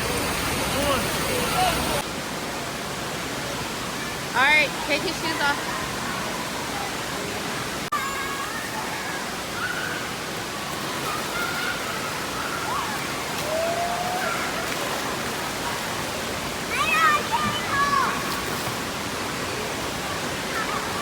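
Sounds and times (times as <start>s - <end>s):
water running and splashing: 0.0s - 21.0s
distant children's voices: 7.9s - 18.7s, 19.3s - 21.0s.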